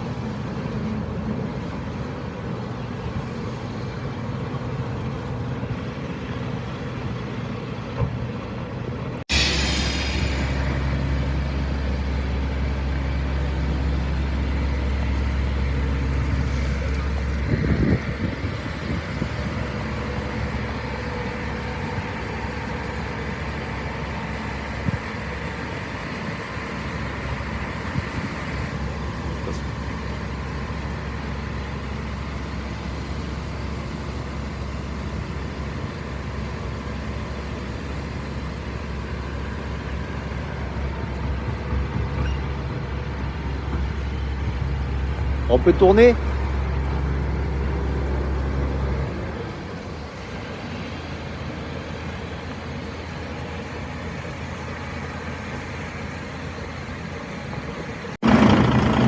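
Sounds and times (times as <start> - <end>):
truck engine running: 0.0 - 59.0
strong low hum: 9.2 - 21.4.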